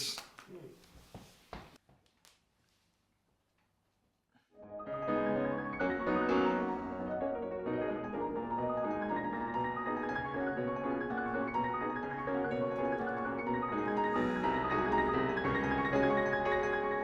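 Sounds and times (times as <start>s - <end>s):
piano melody: 4.6s - 17.0s.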